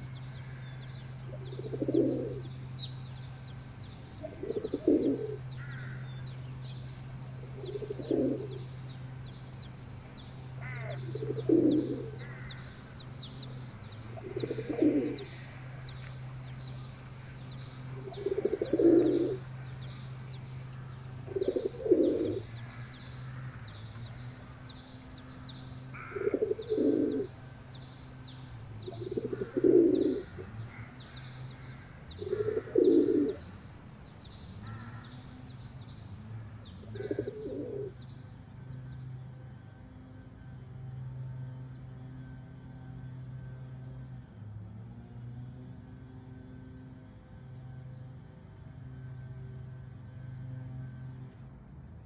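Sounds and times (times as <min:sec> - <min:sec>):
steady low hum: 0:00.0 - 0:52.0
pigeon cooing: 0:01.3 - 0:02.7, 0:04.2 - 0:05.9, 0:07.3 - 0:08.8, 0:10.6 - 0:12.7, 0:13.5 - 0:15.8, 0:17.8 - 0:19.7, 0:21.2 - 0:22.6, 0:25.9 - 0:27.4, 0:28.9 - 0:30.5, 0:31.6 - 0:33.5, 0:36.9 - 0:37.9.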